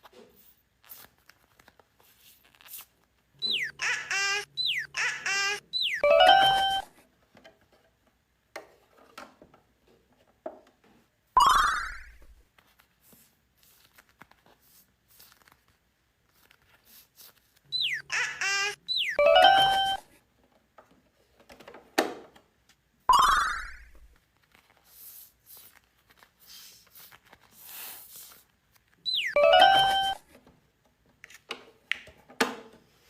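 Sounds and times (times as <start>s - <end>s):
slide-whistle chirps: 3.4s - 3.8s, 4.6s - 5.0s, 5.7s - 6.8s, 17.7s - 20.0s, 29.1s - 30.2s.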